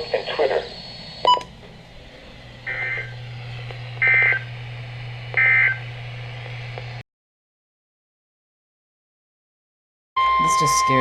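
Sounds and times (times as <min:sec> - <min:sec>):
buzzy digital data bursts: 0:00.0 - 0:01.3, 0:02.6 - 0:06.2
steady low hum: 0:00.0 - 0:07.0.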